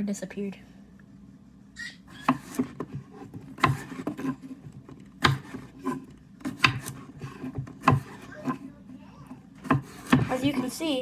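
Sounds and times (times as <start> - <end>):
blade scraping cutting board: 2.1 - 8.7, 9.6 - 11.0
knife chopping on cutting board: 2.2 - 8.7, 9.6 - 10.7.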